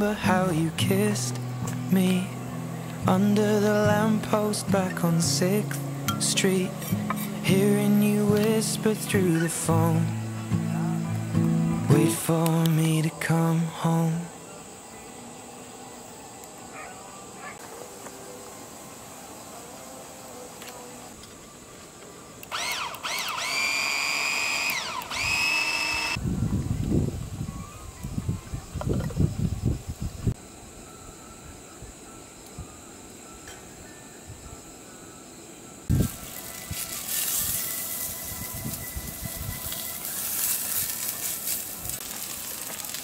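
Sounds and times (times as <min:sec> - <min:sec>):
small electric motor whining: 0:22.4 - 0:26.2, 0:35.9 - 0:43.0
food sizzling in a pan: 0:35.9 - 0:43.0.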